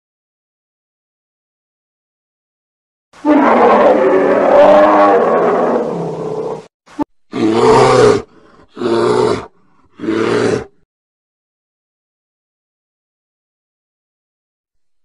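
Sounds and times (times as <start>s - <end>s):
bear roaring: 3.2s - 6.7s, 7.3s - 10.8s.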